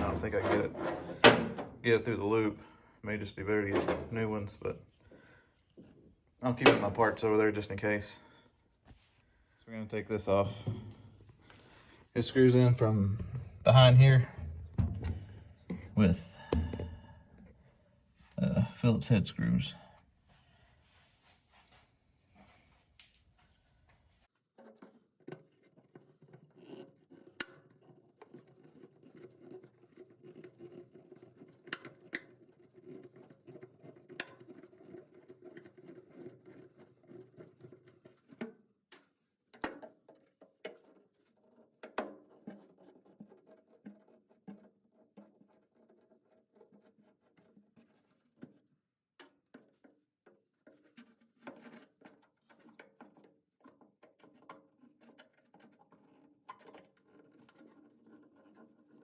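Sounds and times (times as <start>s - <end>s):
screwdriver scratching and scraping: 0.0s - 1.8s, 24.6s - 38.4s, 39.9s - 48.6s, 49.5s - 59.0s.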